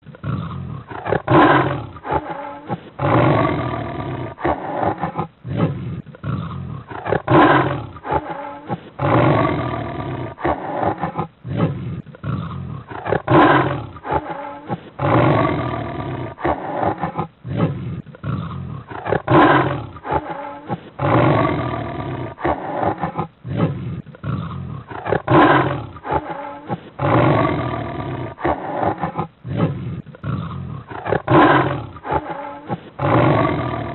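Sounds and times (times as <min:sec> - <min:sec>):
big cat roaring and growling: 0:00.0 - 0:33.9.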